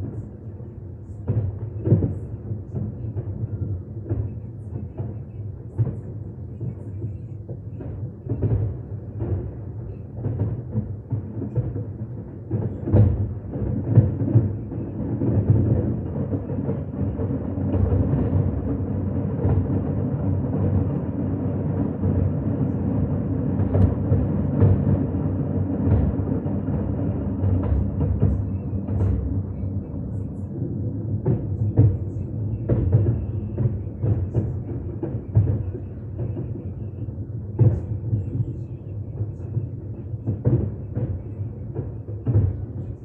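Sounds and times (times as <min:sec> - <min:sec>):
fireworks bursting: 0:07.7 - 0:43.0
low rumble: 0:12.9 - 0:38.7.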